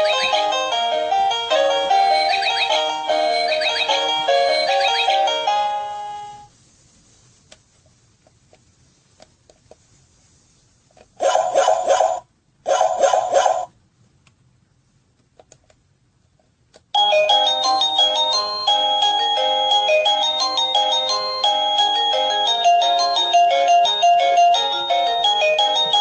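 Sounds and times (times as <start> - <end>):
doorbell chime: 0.0 - 6.5, 17.0 - 26.0
stepping electronic melody: 0.0 - 6.5.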